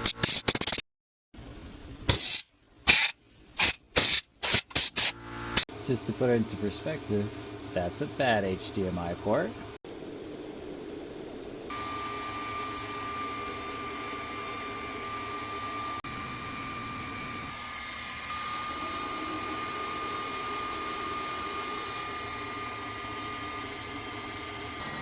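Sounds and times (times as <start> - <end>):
electric blower motor whining: 10.2 - 25.0.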